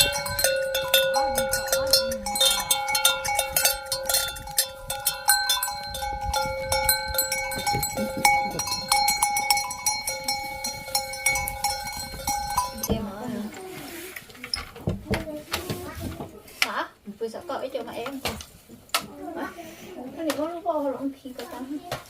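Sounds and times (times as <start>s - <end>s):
metal bells ringing and clanking: 0.0s - 13.5s.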